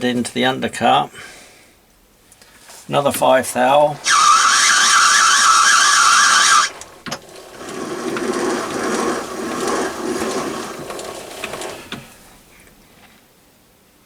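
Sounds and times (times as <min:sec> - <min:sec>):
lathe gears clicking and rattling: 0:03.9 - 0:12.5
loud steady sound: 0:04.0 - 0:07.0.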